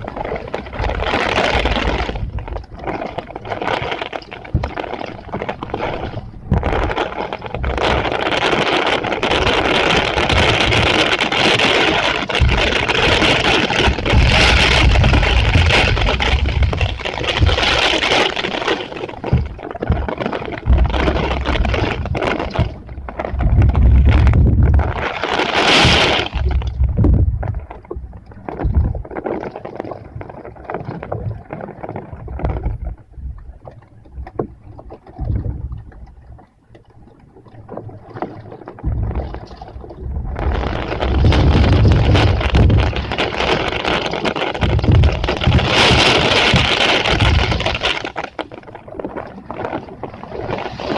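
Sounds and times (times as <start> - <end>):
heavy rain and wind: 0.0 - 36.4, 37.6 - 50.9
wind buffeting microphone: 6.1 - 29.1, 38.8 - 48.2.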